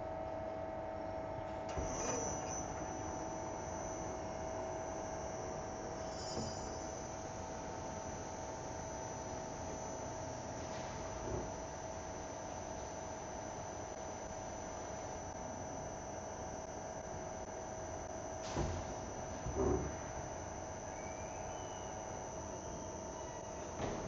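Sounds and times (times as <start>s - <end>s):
thin high whine: 1.7s - 10.7s, 19.6s - 24.0s.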